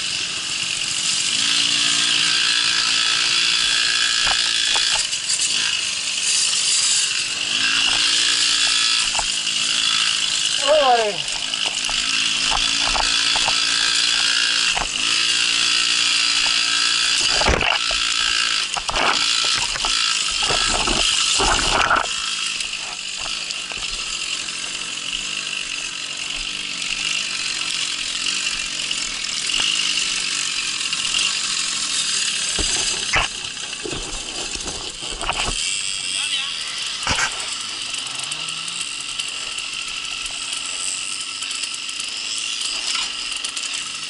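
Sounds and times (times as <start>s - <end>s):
bike rattling: 0.0s - 44.0s
moped engine running: 0.0s - 44.0s
sharp knocks on bumps: 32.5s - 35.6s.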